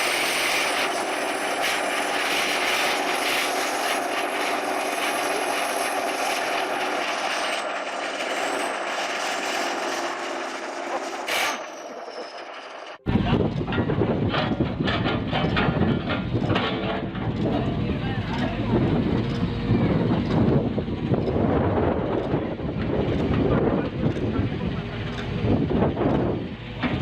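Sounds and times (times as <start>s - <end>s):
engine drone with high whine: 0.0s - 27.0s
wind rumble on microphone: 13.0s - 27.0s.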